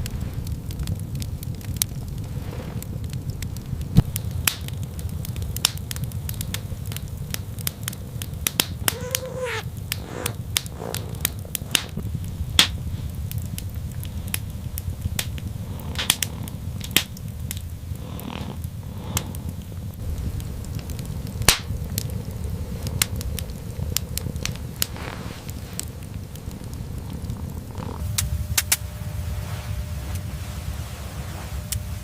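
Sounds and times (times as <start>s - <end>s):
steady low rumble: 0.0s - 32.0s
wood fire crackling and popping: 0.0s - 32.0s
short rising animal cry: 8.8s - 11.8s.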